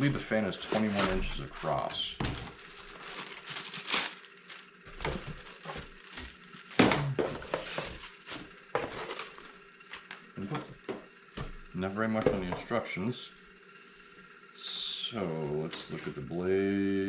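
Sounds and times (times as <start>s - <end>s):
packaging rustling and crinkling: 0.4s - 1.6s, 2.2s - 10.1s.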